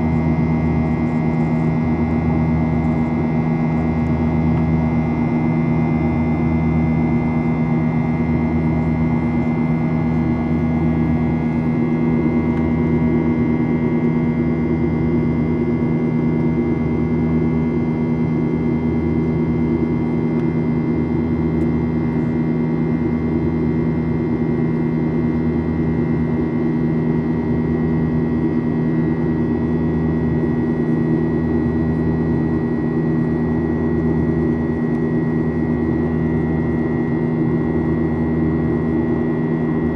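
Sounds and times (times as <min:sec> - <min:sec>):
aircraft cabin hum: 0:07.0 - 0:14.4.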